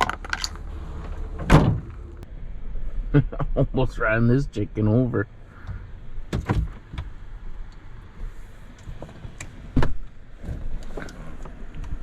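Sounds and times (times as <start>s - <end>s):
low vehicle rumble: 0.0s - 12.0s
truck door clunks and knocks: 1.4s - 1.9s, 5.7s - 7.2s.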